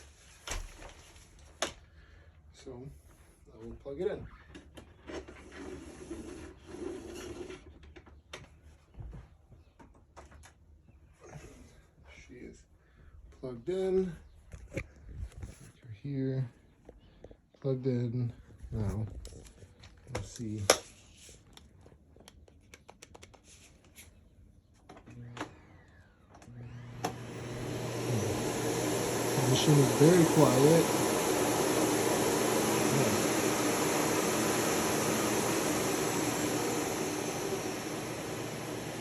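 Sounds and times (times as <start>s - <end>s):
vacuum cleaner motor humming: 25.8s - 39.0s
motor whine slowing: 26.0s - 39.0s
power cord rustling: 26.6s - 39.0s.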